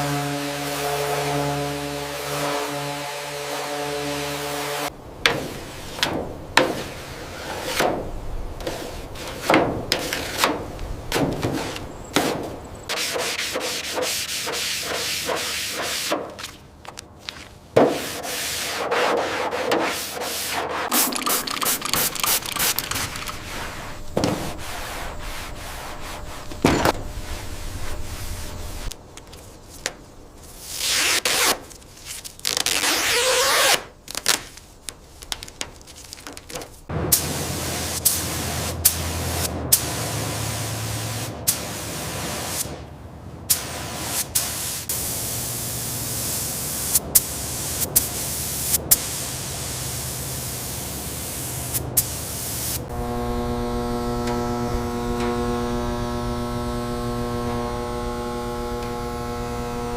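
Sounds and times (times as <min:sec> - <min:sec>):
steady multi-tone hum: 0:20.8 - 0:30.7, 0:44.5 - 0:59.9
spraying hiss: 0:20.9 - 0:29.0, 0:43.5 - 0:52.9.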